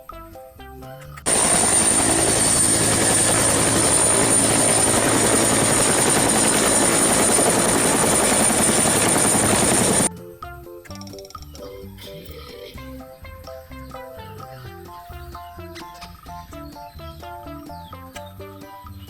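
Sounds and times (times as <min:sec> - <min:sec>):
helicopter rotor and engine: 0:01.3 - 0:10.1.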